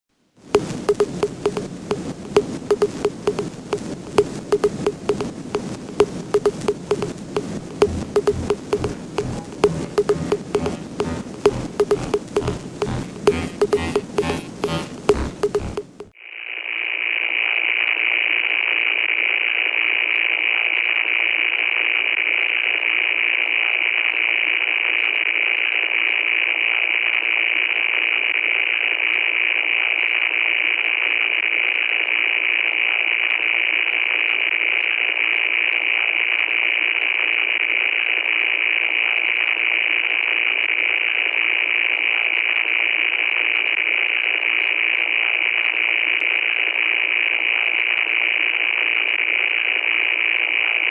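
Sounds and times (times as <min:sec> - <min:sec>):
faint crackling ticks: 0:00.6 - 0:16.1.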